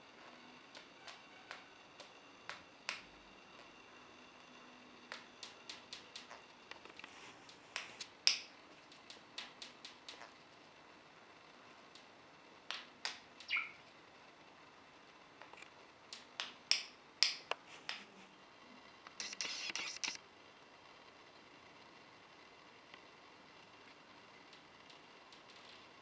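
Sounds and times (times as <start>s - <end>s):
budgerigar clicking: 13.0s - 13.8s
budgerigar high chirps: 13.4s - 13.8s.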